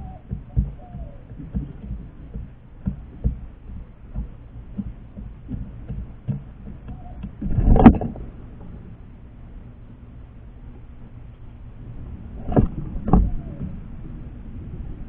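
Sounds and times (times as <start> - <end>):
birds knocking on feeder: 0.0 - 8.2.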